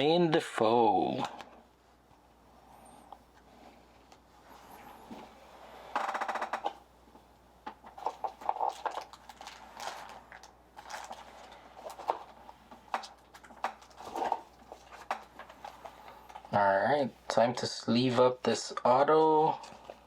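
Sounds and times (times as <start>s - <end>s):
trading cards rustling and clicking: 7.7s - 16.6s.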